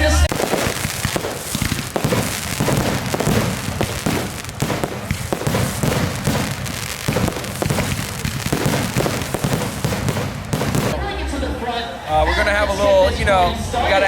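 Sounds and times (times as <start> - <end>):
fireworks popping and crackling: 0.0 - 11.0.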